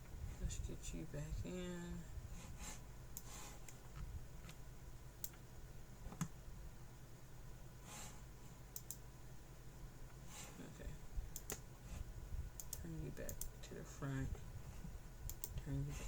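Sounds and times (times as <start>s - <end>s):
computer humming: 0.0s - 16.0s
computer mouse clicks: 5.2s - 5.4s, 8.7s - 9.0s, 11.3s - 11.6s, 12.6s - 13.6s, 15.3s - 15.7s.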